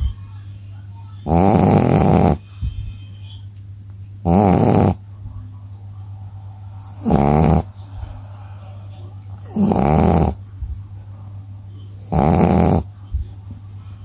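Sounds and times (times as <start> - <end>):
dog snoring loudly: 1.2 - 2.4, 4.2 - 5.0, 6.9 - 7.7, 9.4 - 10.4, 12.0 - 12.9
quiet breathing: 4.9 - 14.0.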